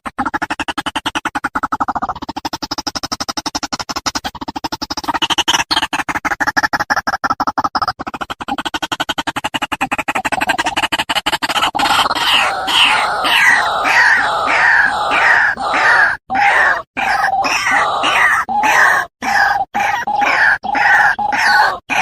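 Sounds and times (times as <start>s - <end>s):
waterhen calling harsh notes: 11.8s - 22.0s.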